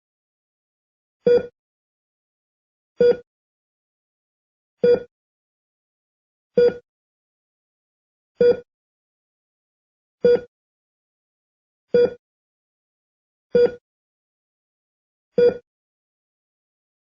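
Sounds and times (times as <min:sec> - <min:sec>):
heart rate monitor beeping: 0:01.3 - 0:01.6, 0:03.0 - 0:03.3, 0:04.8 - 0:05.1, 0:06.6 - 0:06.8, 0:08.4 - 0:08.7, 0:10.2 - 0:10.5, 0:11.9 - 0:12.2, 0:13.6 - 0:13.8, 0:15.4 - 0:15.6.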